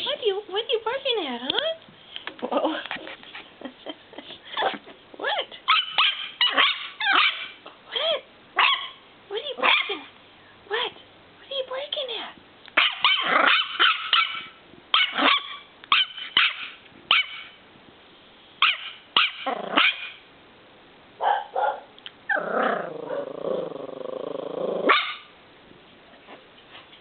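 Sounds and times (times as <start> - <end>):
puppy yapping barks: 5.7 - 7.6, 8.6 - 9.0, 9.6 - 10.0, 12.7 - 17.6, 18.6 - 20.2, 21.2 - 21.9, 24.9 - 25.3
puppy growling: 13.2 - 13.6, 19.4 - 20.0, 22.3 - 25.2.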